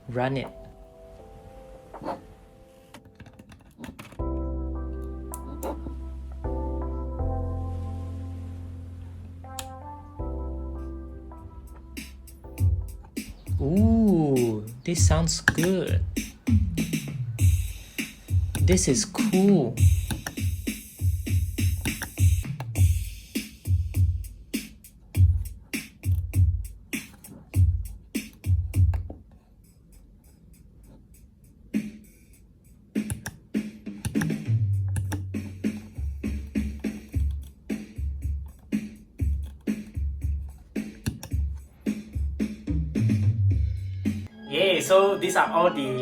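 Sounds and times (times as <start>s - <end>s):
drum machine beat: 11.4s - 44.3s.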